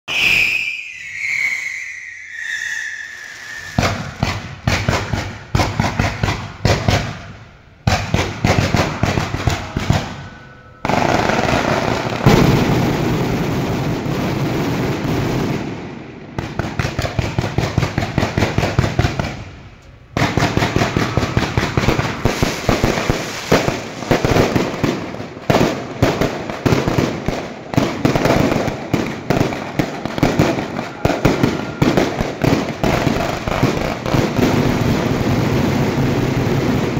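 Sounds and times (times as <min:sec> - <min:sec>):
fireworks cracking and banging: 0:00.1 - 0:36.9.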